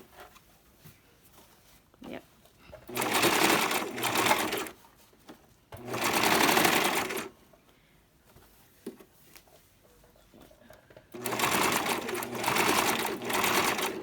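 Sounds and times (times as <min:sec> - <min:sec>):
electric sewing machine stitching: 0:02.9 - 0:04.8, 0:05.8 - 0:07.3, 0:11.2 - 0:14.0.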